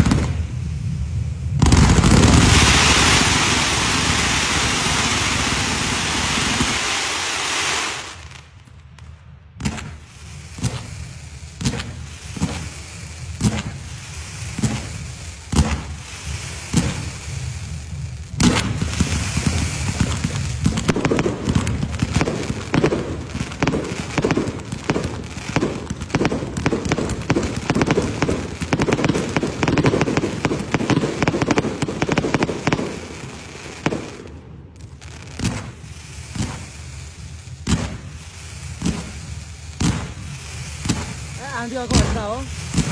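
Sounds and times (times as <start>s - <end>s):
fireworks hissing: 0.0s - 8.6s, 9.6s - 42.9s
firework cracks: 0.0s - 42.9s.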